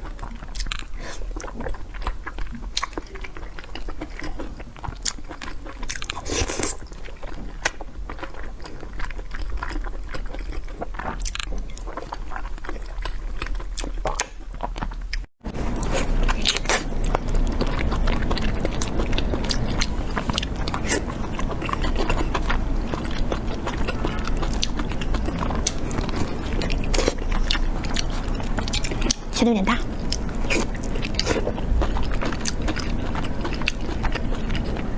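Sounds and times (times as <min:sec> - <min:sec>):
biting and chewing: 0:00.0 - 0:34.9.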